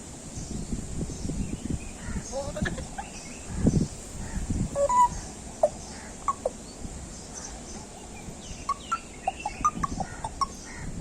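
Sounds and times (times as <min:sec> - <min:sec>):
parrot chirps and squawks: 0:04.3 - 0:06.6.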